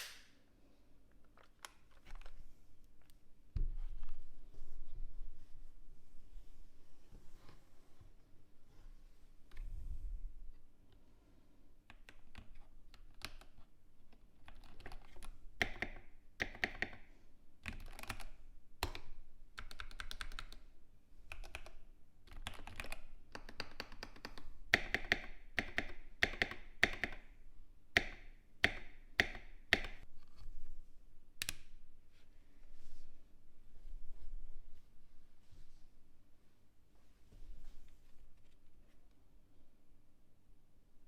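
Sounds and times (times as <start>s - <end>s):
mechanical keyboard keystrokes: 14.4s - 17.0s, 17.6s - 19.0s, 19.6s - 20.6s, 21.3s - 27.2s.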